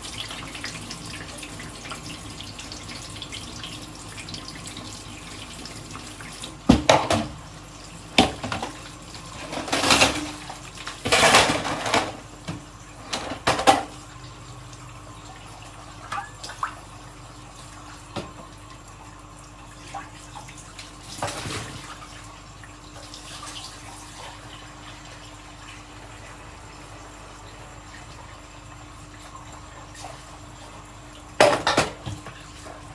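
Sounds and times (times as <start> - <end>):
dishes clinking in a sink: 9.4 - 14.0, 31.4 - 32.4.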